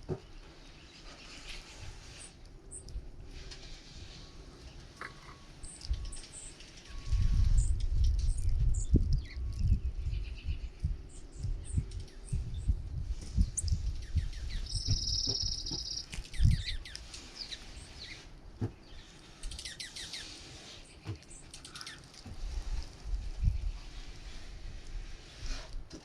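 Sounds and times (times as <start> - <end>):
small birds chirping: 0.0 - 25.6
buzzy bird trill: 13.4 - 18.3, 19.4 - 22.0.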